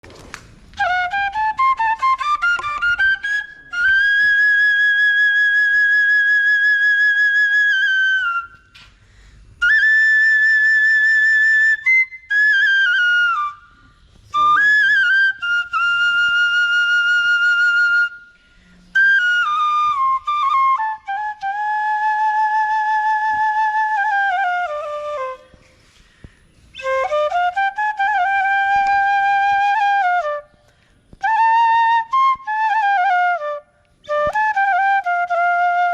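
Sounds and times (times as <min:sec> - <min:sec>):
bamboo flute melody: 0:00.7 - 0:08.9, 0:09.6 - 0:35.9
flute player breathing: 0:08.6 - 0:09.6, 0:13.4 - 0:14.6, 0:18.2 - 0:19.2, 0:25.4 - 0:26.8, 0:30.5 - 0:31.2.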